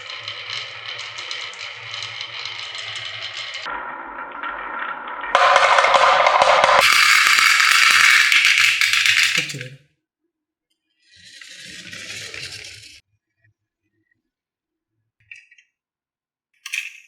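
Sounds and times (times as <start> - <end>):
marbles rattling down wooden track: 0.0 - 3.7, 5.3 - 9.7.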